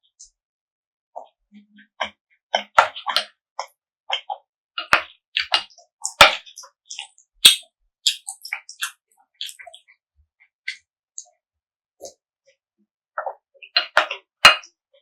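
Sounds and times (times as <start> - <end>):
crisp wet chewing: 2.0 - 10.0.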